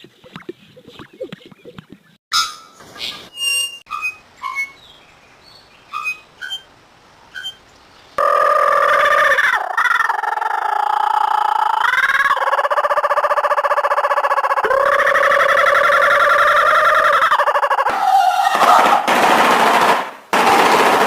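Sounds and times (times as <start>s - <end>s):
bird chirping and trilling: 0.2s - 6.7s, 7.3s - 9.4s.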